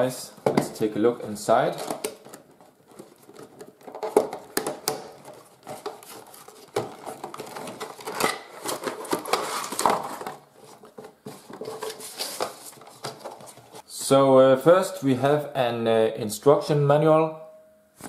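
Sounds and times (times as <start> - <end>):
cardboard and paper rustles: 1.7 - 13.8
cardboard box being opened: 1.8 - 13.8.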